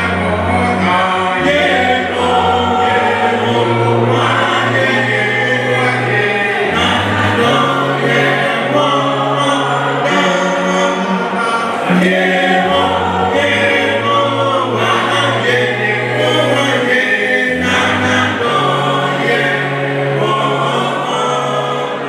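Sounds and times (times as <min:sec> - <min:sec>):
low bass note: 0:00.0 - 0:16.9
choir singing a hymn: 0:00.0 - 0:22.0.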